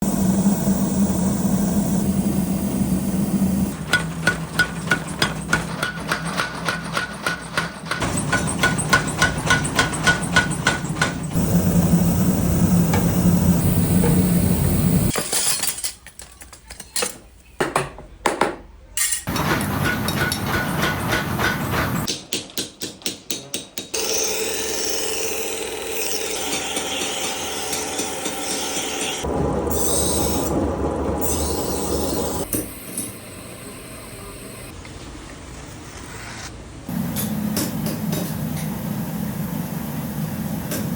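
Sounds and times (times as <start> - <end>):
steady mechanical hum: 0.0 - 15.2, 26.4 - 40.9
hammer striking steel: 3.8 - 11.4, 19.0 - 24.0.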